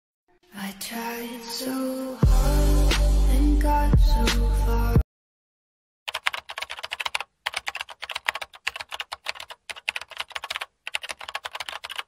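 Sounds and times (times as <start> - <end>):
rapid sharp clicking: 6.1 - 12.0.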